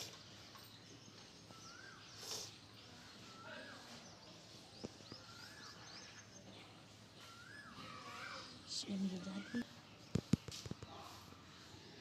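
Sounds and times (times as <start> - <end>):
bird whistled call: 1.5 - 2.5, 5.1 - 6.2, 7.2 - 8.5.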